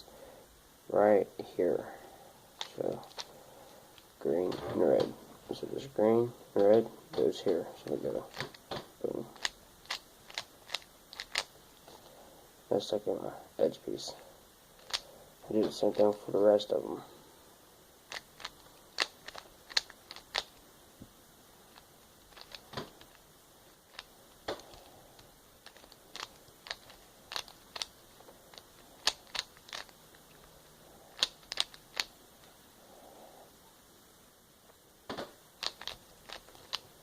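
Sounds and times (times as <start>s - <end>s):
puzzle cube layers clicking: 2.6s - 3.3s, 6.6s - 11.5s, 14.8s - 16.2s, 18.1s - 20.6s, 21.7s - 30.5s, 31.1s - 32.1s, 35.1s - 37.0s.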